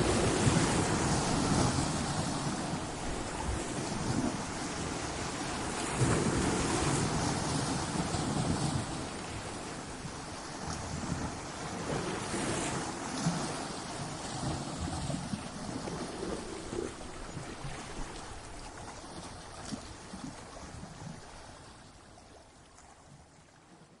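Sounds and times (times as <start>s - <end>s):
ocean surf breaking: 0.0s - 18.2s.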